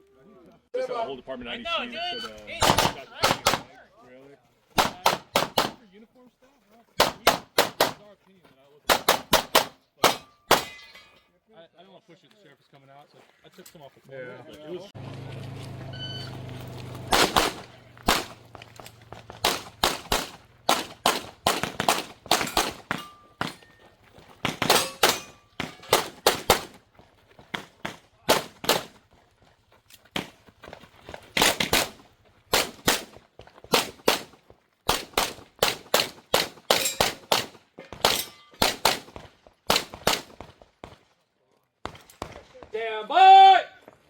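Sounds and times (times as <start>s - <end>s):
rapid pistol fire: 2.6s - 3.7s, 4.8s - 5.8s, 7.0s - 8.0s, 8.9s - 10.7s, 17.1s - 18.4s, 19.4s - 23.0s, 24.5s - 26.8s, 31.4s - 40.4s.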